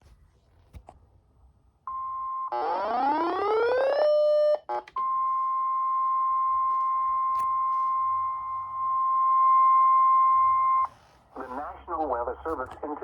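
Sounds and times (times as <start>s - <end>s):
steady electronic warning tone: 4.3s - 10.9s
chord of electronic tones: 4.7s - 10.9s.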